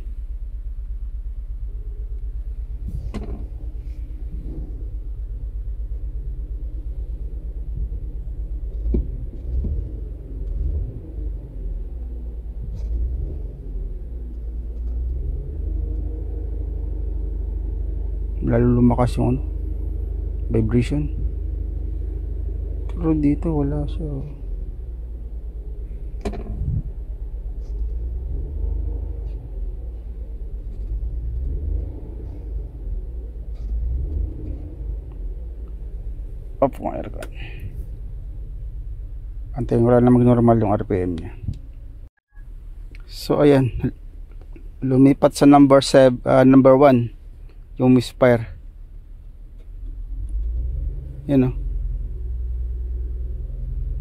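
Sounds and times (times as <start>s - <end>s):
engine thumps: 0.0s - 11.2s, 18.4s - 28.3s
car engine idling with misfire: 0.0s - 51.6s.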